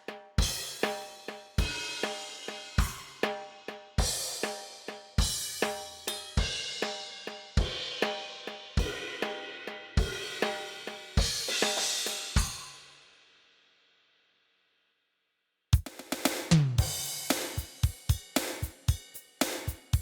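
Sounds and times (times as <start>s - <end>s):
drum machine beat: 0.4s - 3.3s, 4.0s - 7.0s, 15.8s - 20.0s.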